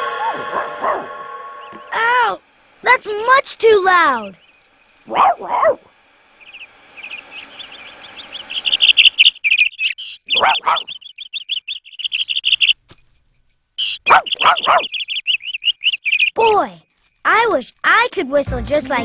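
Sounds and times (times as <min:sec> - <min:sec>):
dog yapping: 0:00.0 - 0:03.4, 0:04.2 - 0:05.9, 0:08.3 - 0:12.8, 0:13.8 - 0:17.0.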